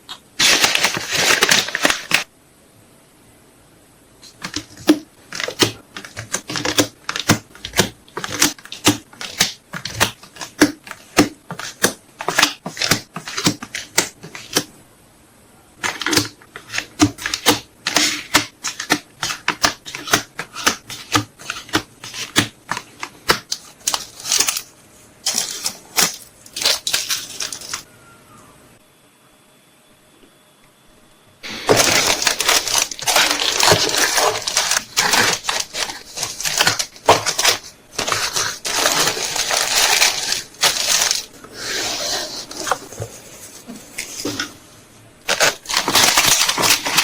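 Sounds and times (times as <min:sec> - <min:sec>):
plastic packaging crinkling: 0:00.4 - 0:02.3, 0:04.2 - 0:14.6, 0:21.4 - 0:27.8, 0:31.4 - 0:41.4, 0:45.2 - 0:47.0.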